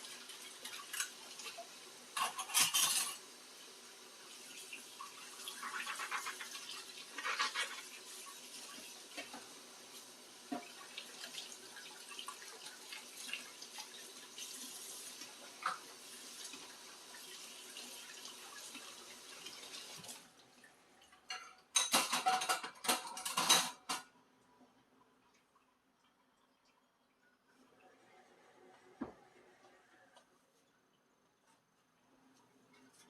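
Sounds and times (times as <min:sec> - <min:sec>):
dishes clattering: 0:02.2 - 0:03.2, 0:15.6 - 0:15.9, 0:21.1 - 0:24.2
dishes clinking: 0:02.2 - 0:03.2, 0:21.1 - 0:24.2
tap water running into sink: 0:04.2 - 0:24.1.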